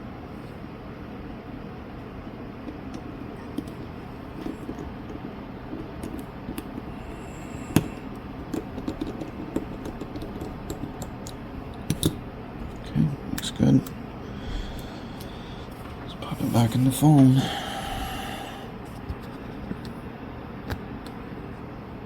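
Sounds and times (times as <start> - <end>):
steady low hum: 0.0 - 22.0
clicks and taps of small tools: 7.7 - 12.2.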